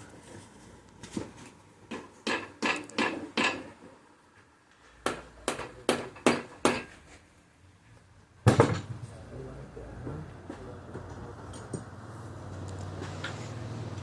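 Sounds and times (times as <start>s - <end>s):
hammer striking engine parts: 1.9s - 3.8s, 5.0s - 7.0s.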